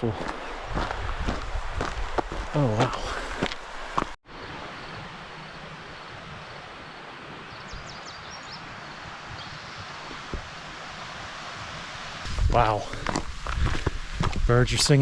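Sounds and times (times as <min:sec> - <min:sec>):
songbirds chirping: 0:02.3 - 0:11.1
steady rushing hiss: 0:08.7 - 0:15.0.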